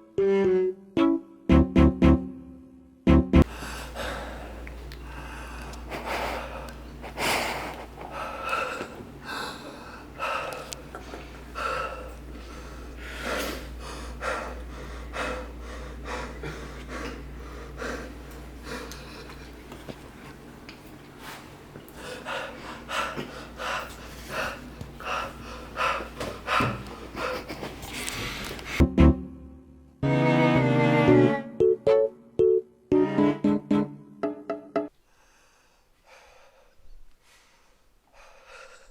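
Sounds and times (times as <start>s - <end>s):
steady low hum: 1.6s - 30.0s.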